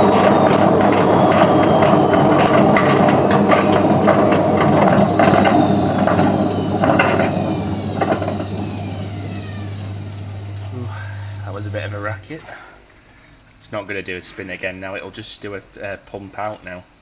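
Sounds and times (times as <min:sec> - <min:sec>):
washing machine drum knocking: 0:00.0 - 0:10.5
washing machine motor whine: 0:00.0 - 0:12.6.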